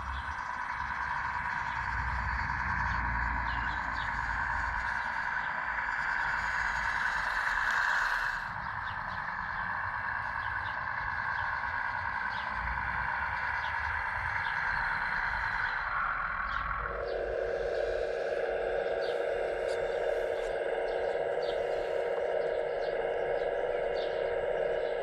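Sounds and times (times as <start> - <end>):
faint ticks: 6.1 - 10.7
hydraulic pump whine: 12.1 - 25.0.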